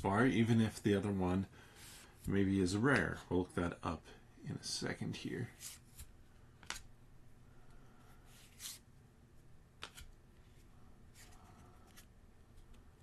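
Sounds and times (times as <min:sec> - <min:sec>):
trading cards sliding and flipping: 0:05.5 - 0:06.9, 0:08.1 - 0:08.9, 0:09.8 - 0:12.8.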